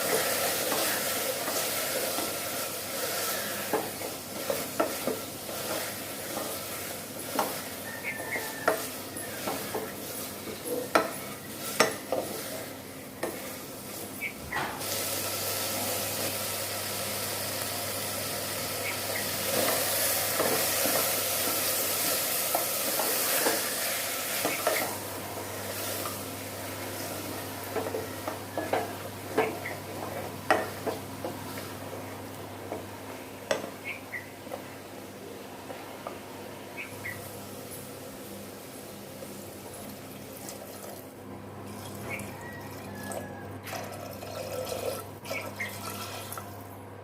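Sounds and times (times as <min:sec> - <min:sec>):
oil sizzling: 0:00.0 - 0:46.8
spoon stirring in a pot: 0:00.1 - 0:14.0.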